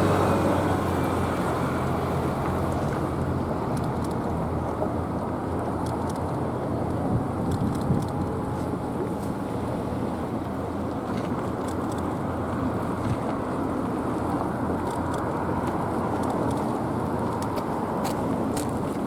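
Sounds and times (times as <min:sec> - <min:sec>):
vehicles driving by: 0:00.0 - 0:19.0
wind on microphone: 0:07.0 - 0:08.9.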